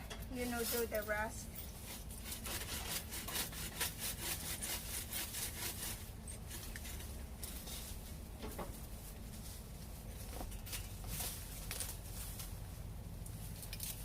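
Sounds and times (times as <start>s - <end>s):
hand saw cutting branch: 1.8s - 7.8s.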